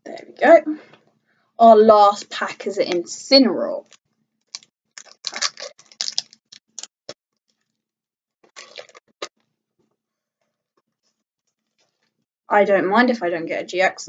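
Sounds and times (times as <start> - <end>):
foil wrapper crinkling and tearing: 3.8 - 6.9, 8.5 - 9.1.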